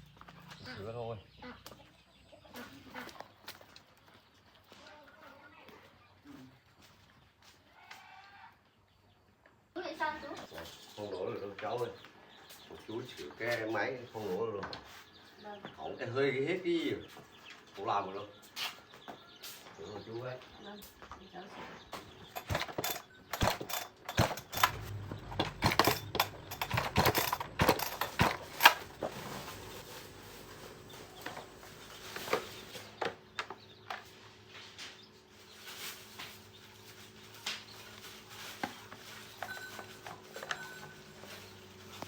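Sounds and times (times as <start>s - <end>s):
metal tools clinking: 22.2s - 32.8s, 39.4s - 41.4s.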